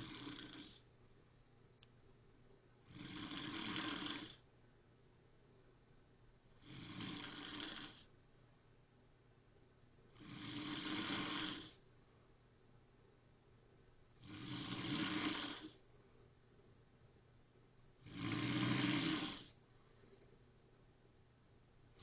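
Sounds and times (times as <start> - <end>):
person snoring: 0.0 - 0.9, 2.8 - 4.4, 6.6 - 8.1, 10.1 - 11.8, 14.2 - 15.9, 18.0 - 19.6.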